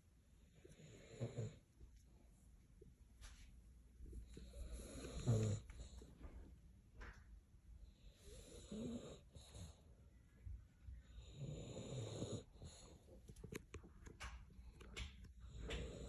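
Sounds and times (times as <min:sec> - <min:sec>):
dog snoring: 0:00.4 - 0:01.7, 0:04.3 - 0:06.1, 0:07.9 - 0:09.8, 0:11.0 - 0:13.0, 0:15.4 - 0:16.0.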